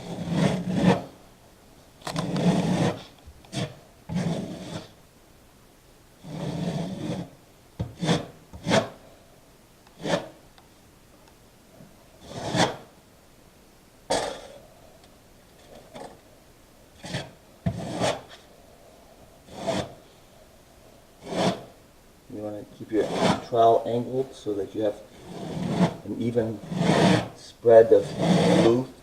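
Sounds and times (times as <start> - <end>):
trowel scraping adhesive: 0.0 - 1.1, 2.1 - 5.0, 6.2 - 9.0, 10.0 - 10.4, 12.2 - 12.9, 17.0 - 18.4, 19.5 - 20.0, 21.2 - 21.7, 23.0 - 23.6, 25.1 - 28.9.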